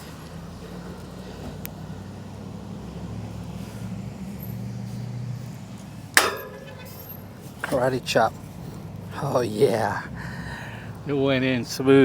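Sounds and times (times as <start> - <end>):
vehicle engine humming: 0.0 - 11.9
sharp metallic strike: 6.2 - 7.1.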